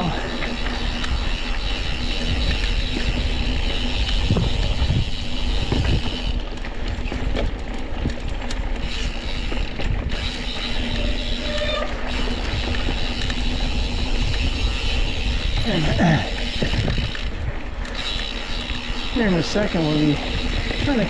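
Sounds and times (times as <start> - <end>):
bike rattling: 0.0 - 21.0
bike tyre noise on dirt: 0.0 - 21.0
freewheel hub buzzing: 0.0 - 21.0.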